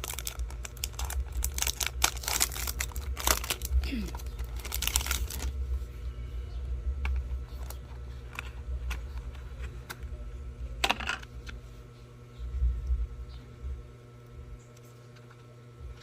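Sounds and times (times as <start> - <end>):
packaging rustling: 0.0 - 5.6.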